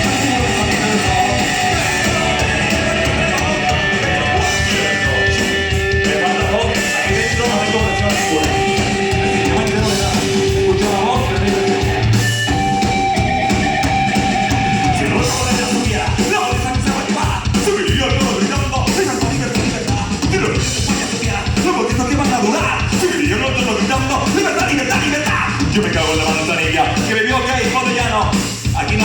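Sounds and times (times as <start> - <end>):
electric guitar: 0.0 - 16.2
drumming: 0.0 - 29.0
person singing: 0.0 - 29.0.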